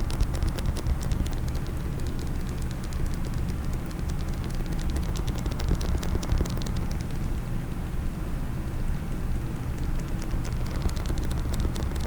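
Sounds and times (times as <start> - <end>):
faint clicks: 0.0 - 7.4, 9.7 - 12.0
rubbing and scratching on a case: 10.0 - 12.0.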